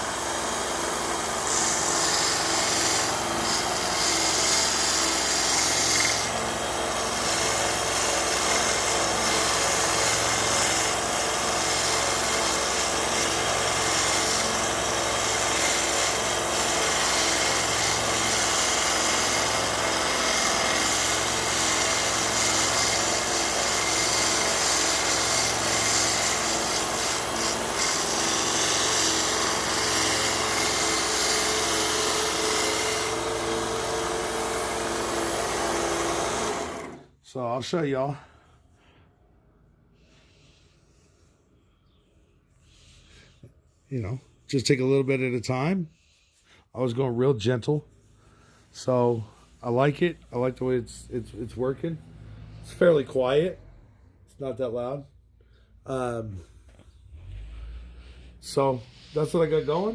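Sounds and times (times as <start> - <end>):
belt sander rasping: 0.0 - 37.1, 57.1 - 59.9.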